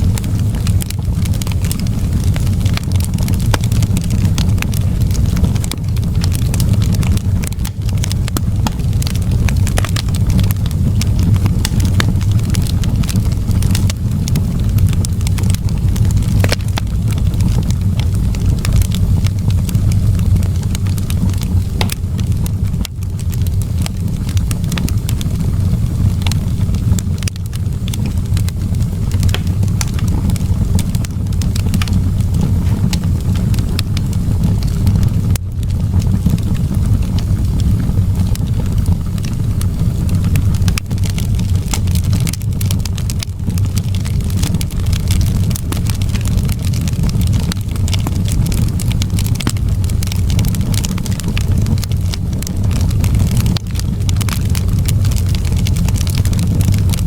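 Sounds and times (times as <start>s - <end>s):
steady low rumble: 0.0s - 57.0s
wood fire crackling: 0.0s - 57.0s
sharp pops and snaps: 0.5s - 25.1s, 26.2s - 33.1s.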